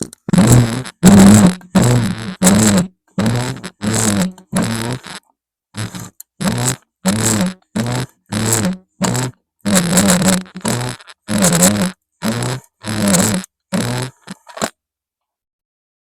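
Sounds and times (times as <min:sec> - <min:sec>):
low creak bending in pitch: 0:00.0 - 0:05.2, 0:05.8 - 0:14.7
sewing machine running: 0:05.8 - 0:13.4.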